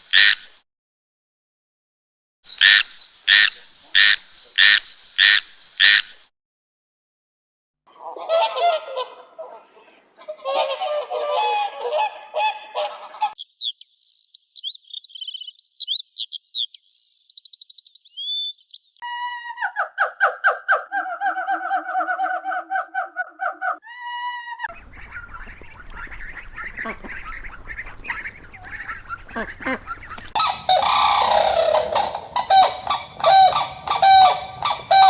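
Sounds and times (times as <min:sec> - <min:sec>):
high chirps and whistles: 0:24.7 - 0:35.0
loud animal calls: 0:24.7 - 0:35.0
low descending call: 0:24.7 - 0:35.0
overlapping animal calls: 0:24.7 - 0:35.0.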